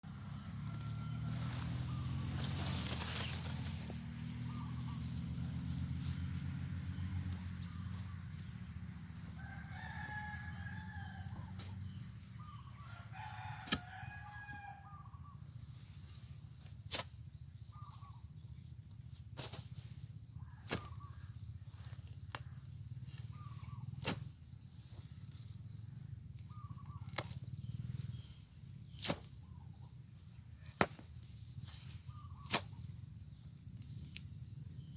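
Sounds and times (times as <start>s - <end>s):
rooster crowing: 0.5s - 2.0s, 9.2s - 15.2s.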